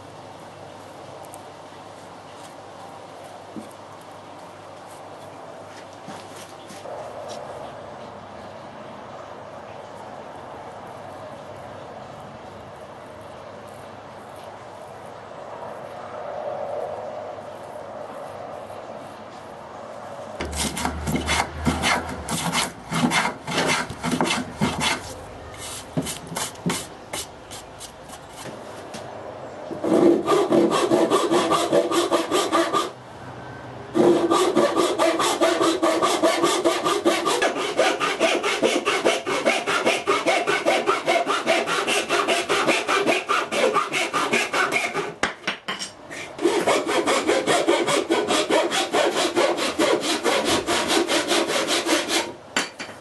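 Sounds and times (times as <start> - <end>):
hand saw cutting wood: 20.4 - 27.3, 29.8 - 33.0, 34.0 - 45.4, 46.1 - 52.4.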